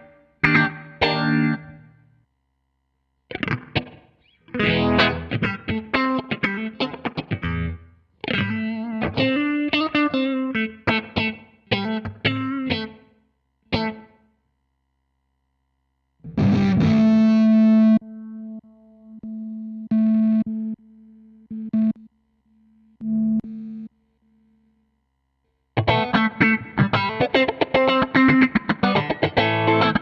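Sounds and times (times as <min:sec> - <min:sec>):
overdriven electric guitar: 0:00.0 - 0:02.0, 0:03.3 - 0:13.1, 0:13.7 - 0:14.2, 0:16.2 - 0:19.1, 0:25.8 - 0:30.0.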